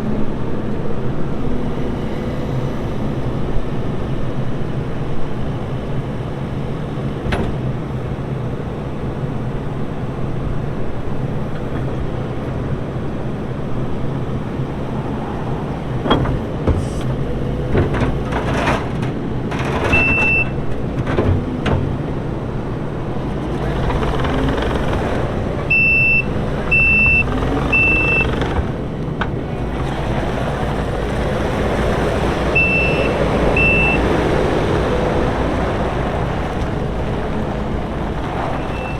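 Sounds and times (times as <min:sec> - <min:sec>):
diesel engine running: 0:00.0 - 0:38.9
backup alarm beeping: 0:25.7 - 0:28.3, 0:32.6 - 0:34.2.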